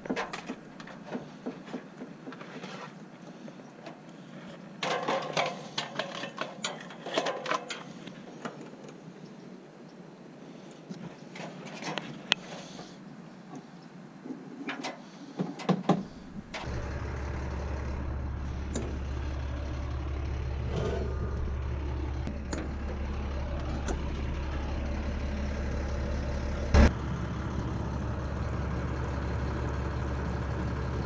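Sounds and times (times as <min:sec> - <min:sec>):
low engine-like rumble: 0:16.1 - 0:31.0.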